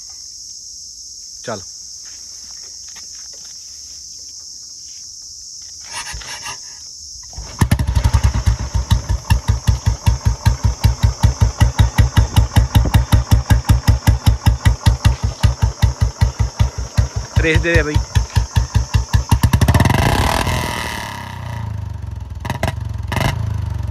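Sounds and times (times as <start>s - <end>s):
motorcycle engine idling: 7.3s - 23.9s.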